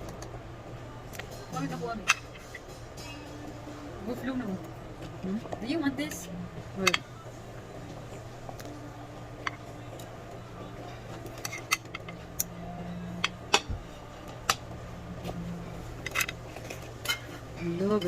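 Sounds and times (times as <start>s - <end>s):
steady low hum: 0.0s - 18.0s
utensils clinking against bowls: 6.8s - 7.1s, 11.3s - 12.5s, 16.0s - 18.0s.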